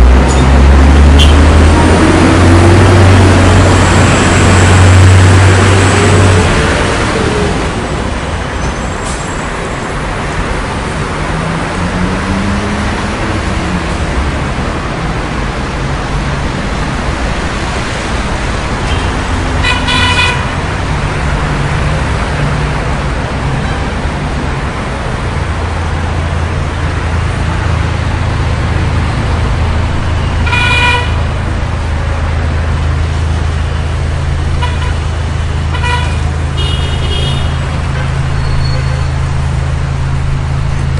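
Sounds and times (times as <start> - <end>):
roar of passing cars: 0.0 - 8.3, 10.6 - 19.6
car horn toots: 1.1 - 1.5, 18.9 - 20.5, 30.4 - 31.2, 35.7 - 37.6.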